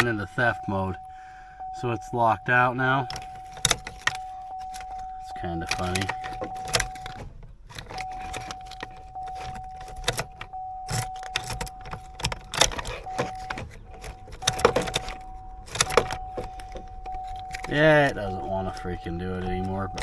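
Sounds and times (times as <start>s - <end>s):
electronic warning tone: 0.0s - 7.2s, 8.0s - 20.0s
keys jangling: 3.1s - 17.8s.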